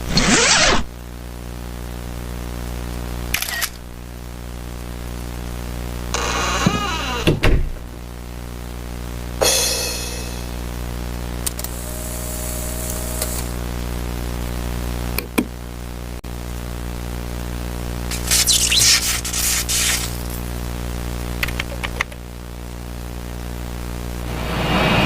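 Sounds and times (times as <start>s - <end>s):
electrical hum: 3.7s - 25.0s
hiss: 18.1s - 20.4s
sharp clicks: 21.4s - 22.2s.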